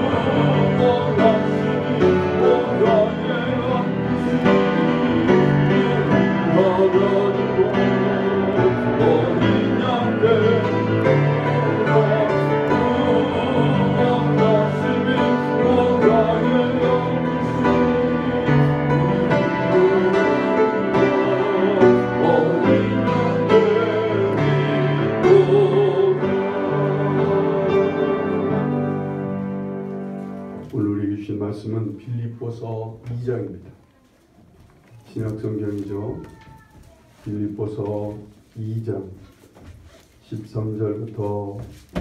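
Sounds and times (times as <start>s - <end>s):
piano accompaniment: 0.0s - 33.6s
hymn singing: 0.0s - 33.7s.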